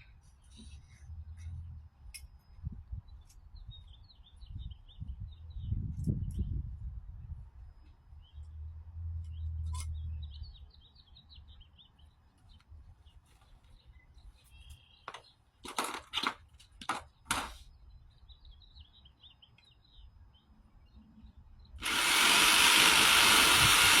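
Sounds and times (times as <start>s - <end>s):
birds chirping faintly: 0.0s - 22.0s
loud steady hissing: 21.8s - 24.0s.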